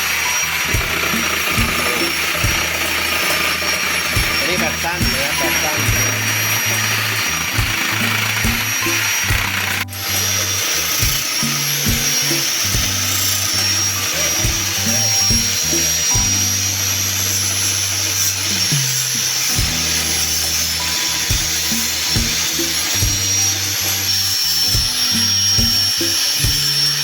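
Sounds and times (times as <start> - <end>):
electric grinder sanding wood: 0.0 - 27.0
music with bass and beat: 0.0 - 27.0.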